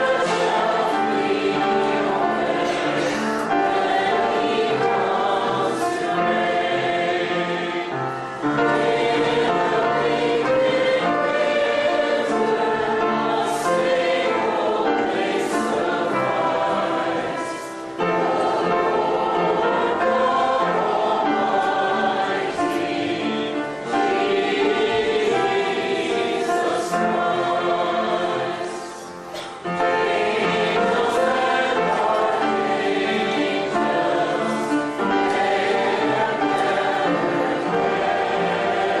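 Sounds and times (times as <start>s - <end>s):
choir singing: 0.0s - 39.0s.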